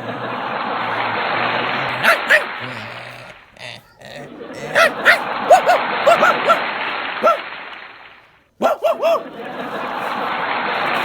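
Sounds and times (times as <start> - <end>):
snoring like dog yelps: 0.0 - 7.4.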